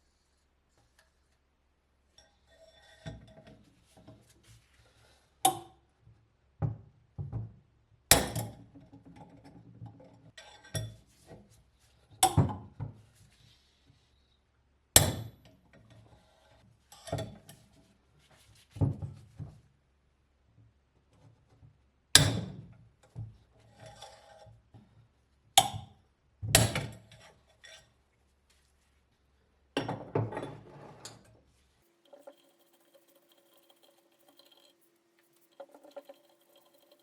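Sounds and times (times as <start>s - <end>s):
small rattles: 31.9s - 37.0s.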